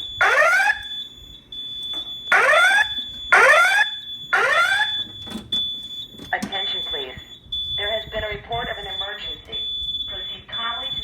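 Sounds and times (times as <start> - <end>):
spoken evacuation messages: 6.2 - 11.0.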